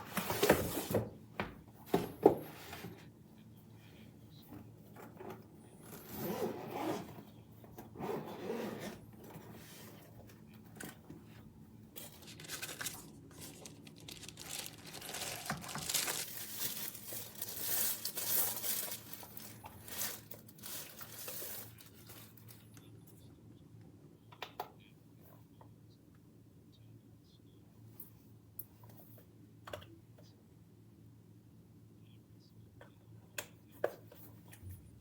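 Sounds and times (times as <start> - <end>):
packaging crinkling and tearing: 12.0 - 22.6.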